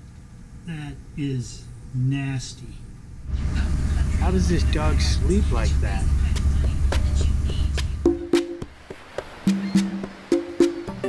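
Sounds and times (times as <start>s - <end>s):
plucked string music: 8.1s - 11.0s.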